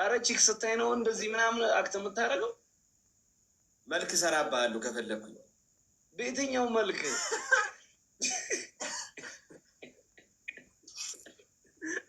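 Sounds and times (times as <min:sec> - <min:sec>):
person coughing: 0:08.2 - 0:10.0, 0:11.1 - 0:12.0.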